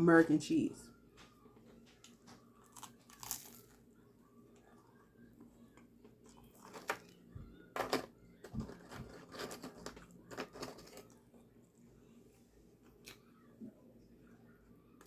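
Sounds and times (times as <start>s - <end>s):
sandwich crunching: 1.8s - 4.0s, 5.7s - 11.5s.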